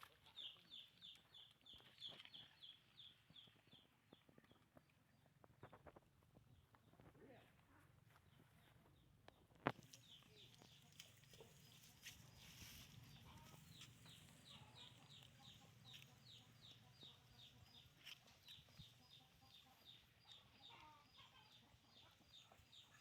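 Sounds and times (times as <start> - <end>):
chicks peeping: 13.2 - 23.0.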